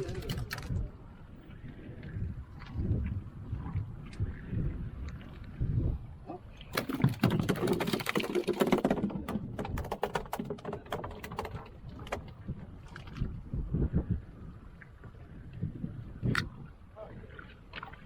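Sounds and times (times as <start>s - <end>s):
clatter of sharp knocks: 6.7s - 12.4s.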